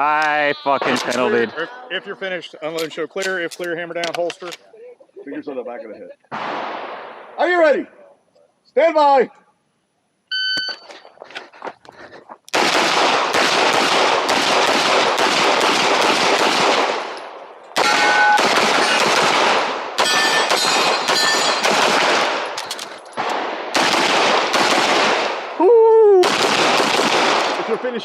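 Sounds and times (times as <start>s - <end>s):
faint ringing tones: 9.5s - 11.2s
pistol shots in rapid strings: 12.5s - 17.2s, 17.8s - 22.5s, 23.2s - 25.4s, 26.2s - 28.0s.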